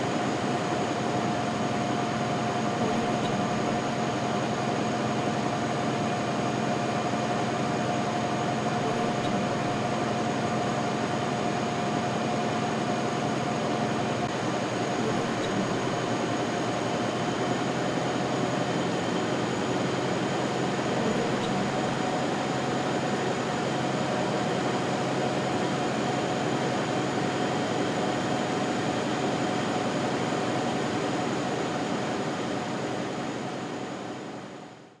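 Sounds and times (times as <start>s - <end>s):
machine whine: 0.0s - 35.0s
printing machinery clatter and rumble: 0.0s - 35.0s.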